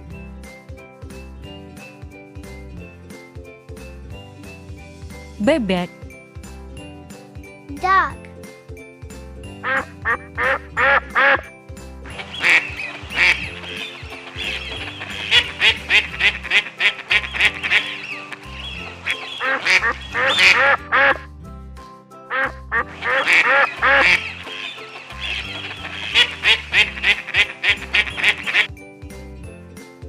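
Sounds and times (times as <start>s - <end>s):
background music: 0.0s - 30.0s
duck quacking: 9.6s - 11.5s, 12.1s - 21.3s, 22.3s - 28.7s.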